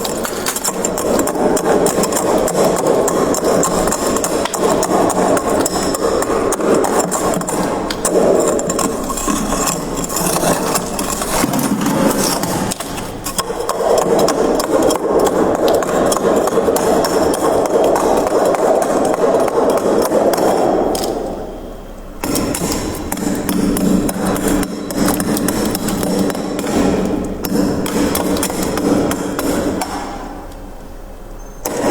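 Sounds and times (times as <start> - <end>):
freezer frost crunching: 0.0 - 21.3.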